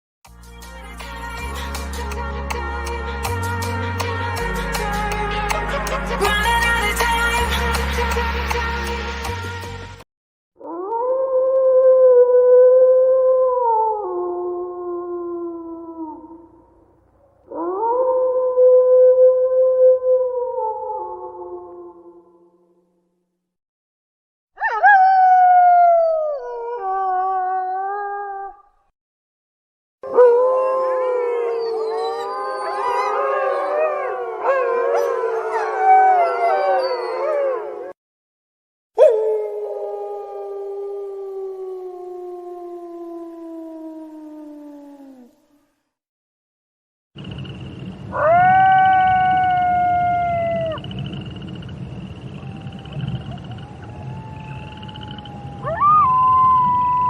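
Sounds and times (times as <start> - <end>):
wolves howling in chorus: 30.0 - 38.0, 52.5 - 57.0.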